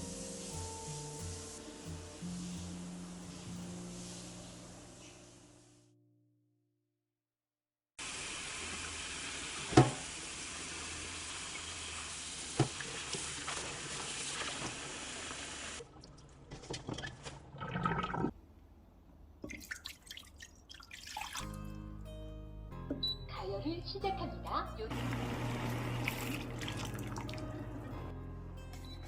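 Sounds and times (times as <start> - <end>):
tap running into sink: 9.6 - 10.1, 12.5 - 13.7.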